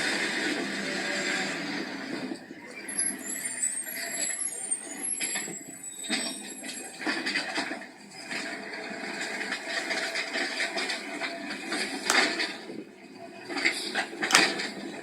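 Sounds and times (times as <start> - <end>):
knocks and clatter: 11.7 - 12.8, 13.7 - 15.0.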